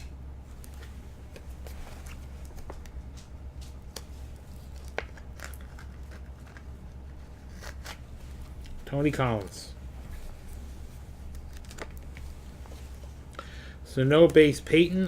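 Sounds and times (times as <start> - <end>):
low steady hum: 0.0 - 15.0
cards clicking and rustling: 0.6 - 9.6, 11.2 - 12.3.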